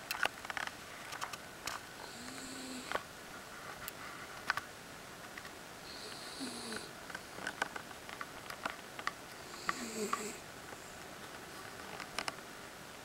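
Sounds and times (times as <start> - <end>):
dog snoring with whistle: 2.0 - 2.9, 5.9 - 6.9, 9.5 - 10.4.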